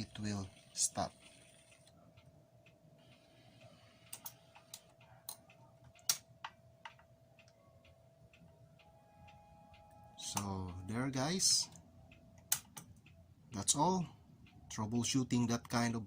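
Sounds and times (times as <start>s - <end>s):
faint motor hum: 0.0s - 16.0s
record changer mechanism clicking: 0.2s - 7.6s.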